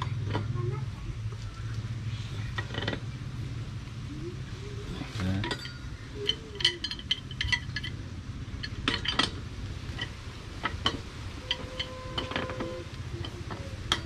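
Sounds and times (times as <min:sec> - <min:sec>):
hard objects clinking: 0:05.4 - 0:08.0.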